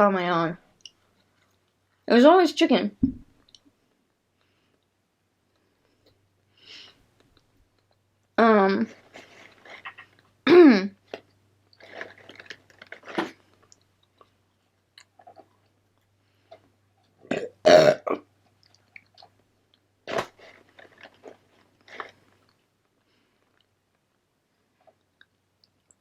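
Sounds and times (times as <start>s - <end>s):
loud belch: 17.2s - 18.2s.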